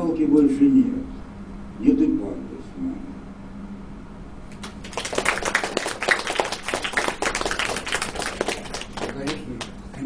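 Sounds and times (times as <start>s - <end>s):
audience clapping: 4.5s - 9.8s.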